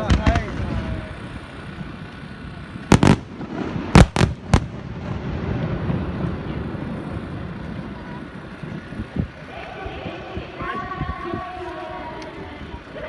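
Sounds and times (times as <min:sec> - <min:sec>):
fireworks bangs: 0:00.0 - 0:02.0, 0:02.8 - 0:08.0.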